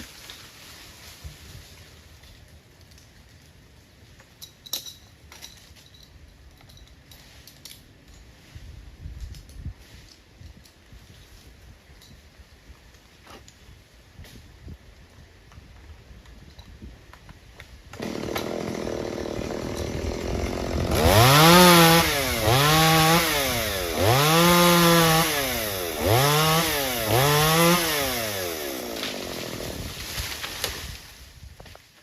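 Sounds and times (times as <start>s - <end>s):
chainsaw engine revving: 18.0s - 30.1s.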